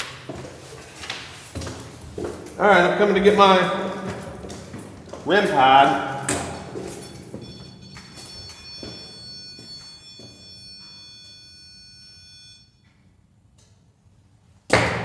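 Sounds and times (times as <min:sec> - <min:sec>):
high electronic alarm tone: 0:05.3 - 0:13.0.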